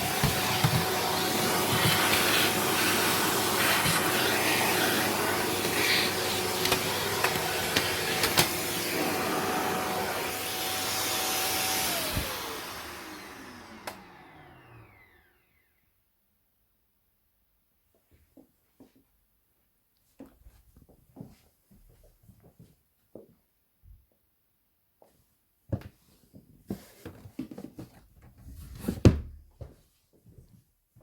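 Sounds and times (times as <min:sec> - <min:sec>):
vacuum cleaner motor whine: 0:00.0 - 0:15.8
vacuum motor winding down: 0:00.0 - 0:15.8.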